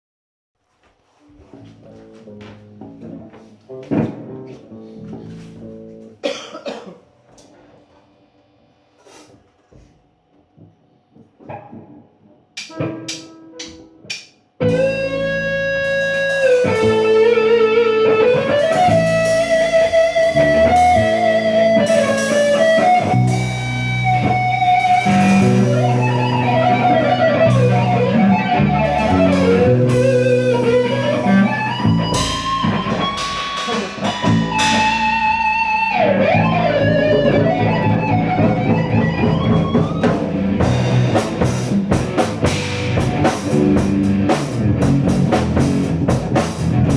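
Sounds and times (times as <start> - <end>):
rock band improvising: 10.6 - 46.9
electric guitar lead melody: 12.7 - 46.9.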